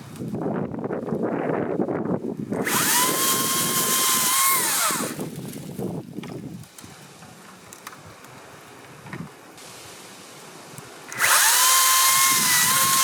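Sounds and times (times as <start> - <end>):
battery chainsaw cutting wood: 2.6 - 5.4, 11.1 - 13.0.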